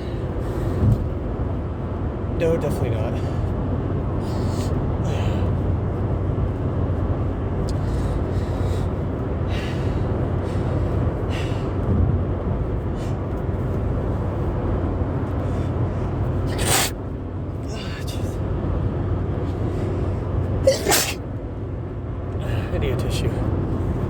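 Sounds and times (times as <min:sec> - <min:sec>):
car interior road drone: 0:00.0 - 0:24.0
person sneezing: 0:16.5 - 0:16.9, 0:20.6 - 0:21.2.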